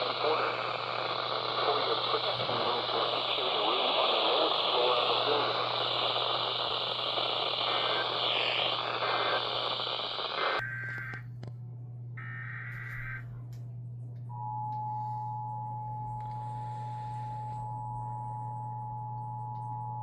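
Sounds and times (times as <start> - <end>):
alert header data bursts: 0.0 - 11.2
radio static hiss: 0.0 - 11.3, 12.2 - 13.2
short data tones: 0.0 - 11.3
low hum: 0.0 - 20.0.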